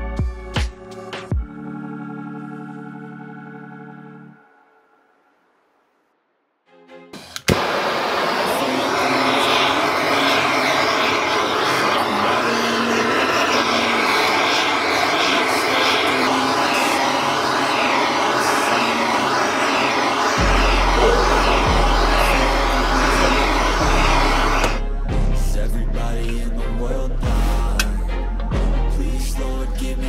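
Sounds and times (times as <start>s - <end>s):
heavy bass line: 20.2s - 30.0s.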